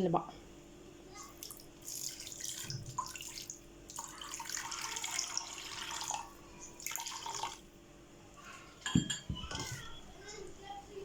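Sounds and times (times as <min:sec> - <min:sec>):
water pouring into clay pot: 0:01.4 - 0:07.6.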